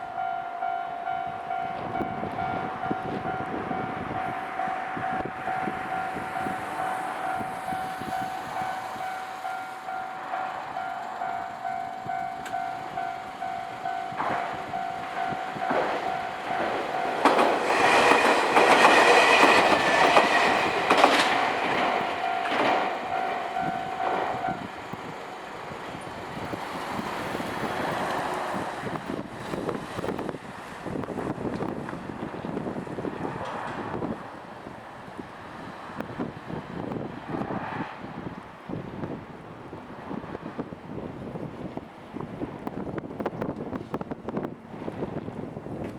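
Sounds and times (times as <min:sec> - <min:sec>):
train wheels clacking on rail joints: 0:05.0 - 0:32.1
level-crossing bell dinging: 0:05.5 - 0:17.3, 0:22.0 - 0:24.7.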